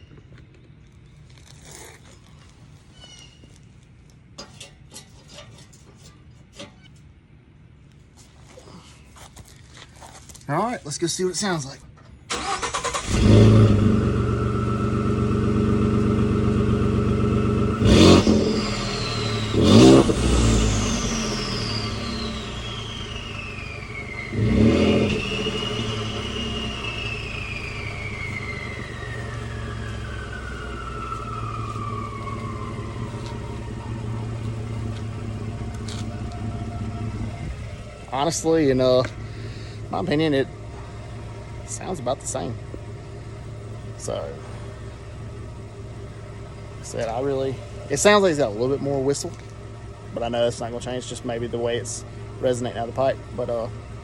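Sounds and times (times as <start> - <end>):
truck engine idling and revving: 12.3 - 54.0.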